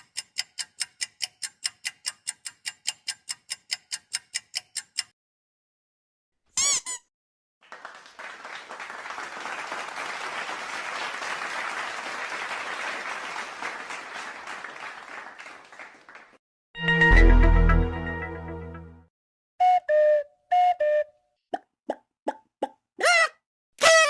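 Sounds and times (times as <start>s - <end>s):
crowd applause: 7.6s - 16.4s.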